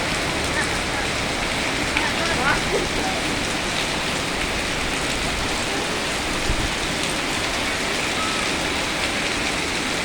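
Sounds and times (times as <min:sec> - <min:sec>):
rain falling: 0:00.0 - 0:10.0.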